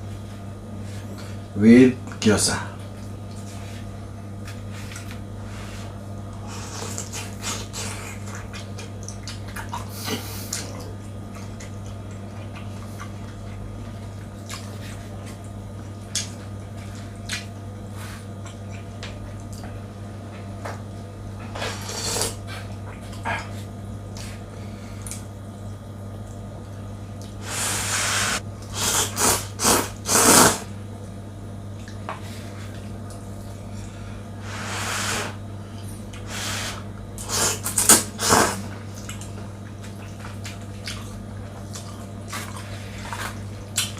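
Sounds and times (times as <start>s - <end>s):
steady low hum: 0.0s - 43.9s
slurping noodles: 27.4s - 30.7s, 34.4s - 35.4s, 36.2s - 38.7s.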